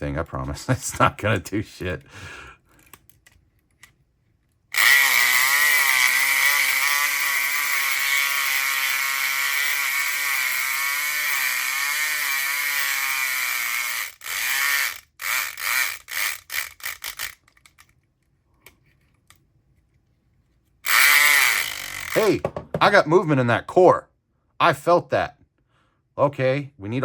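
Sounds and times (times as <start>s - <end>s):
electric pick gun buzzing: 4.7s - 17.4s, 20.8s - 22.6s.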